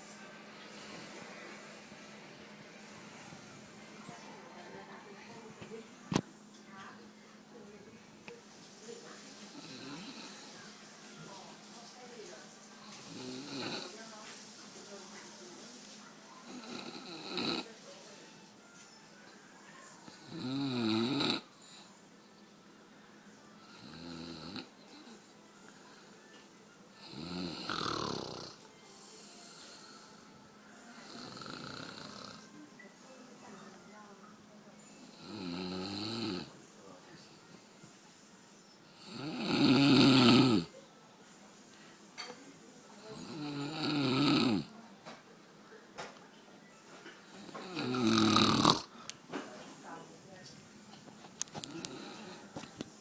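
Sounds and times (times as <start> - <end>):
person snoring: 9.5 - 10.5, 12.8 - 14.0, 20.1 - 21.8, 23.6 - 25.2, 27.0 - 30.2, 31.0 - 32.4, 35.1 - 36.5, 39.0 - 40.7, 43.2 - 44.7, 47.4 - 49.0, 51.6 - 52.5.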